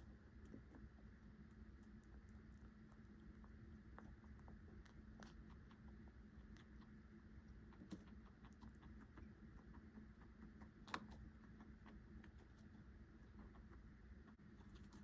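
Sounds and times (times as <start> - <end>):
pet clucking soft clicks: 7.7 - 12.4.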